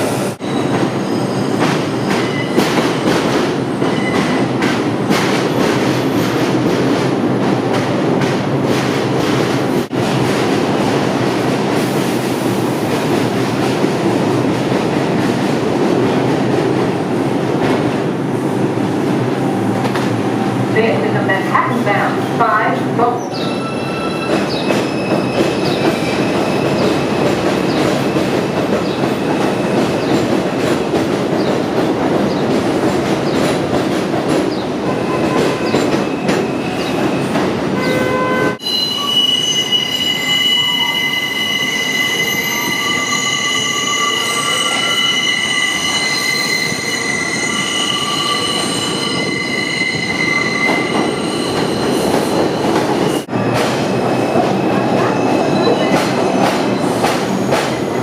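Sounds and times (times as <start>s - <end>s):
train wheels rumbling on rails: 0.0s - 37.8s, 41.1s - 58.0s
steel wheels squealing: 23.3s - 30.3s, 38.6s - 53.3s.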